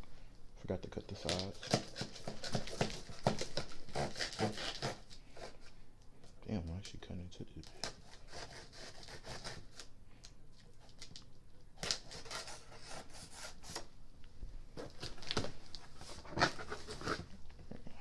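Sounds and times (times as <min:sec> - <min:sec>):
cardboard box scraping and rustling: 0:15.0 - 0:17.3.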